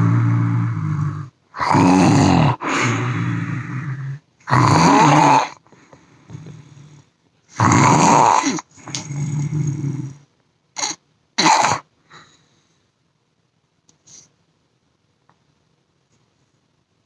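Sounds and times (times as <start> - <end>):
man snoring heavily: 0.0 - 5.6, 7.6 - 10.2
short snorts: 1.6 - 3.4, 10.8 - 12.3.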